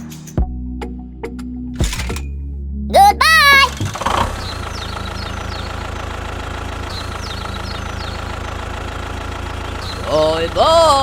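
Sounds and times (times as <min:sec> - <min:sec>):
tractor engine idling: 0:03.7 - 0:11.0.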